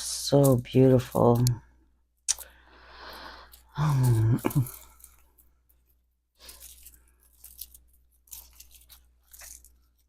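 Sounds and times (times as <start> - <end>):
packaging rustling and crackling: 6.4 - 10.0.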